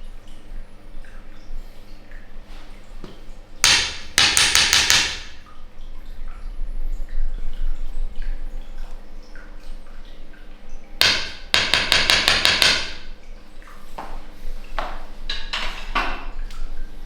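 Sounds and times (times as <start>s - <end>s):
sharp knocks or slaps: 3.6s - 5.4s, 11.0s - 13.1s.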